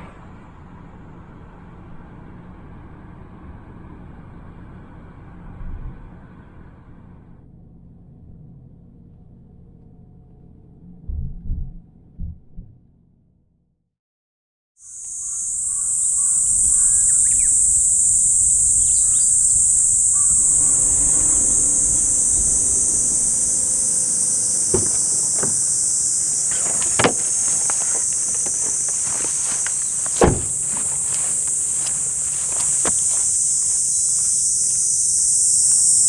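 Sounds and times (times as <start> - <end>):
high-pitched insect chorus: 15.1 - 36.0
sharp knocks: 24.4 - 33.8.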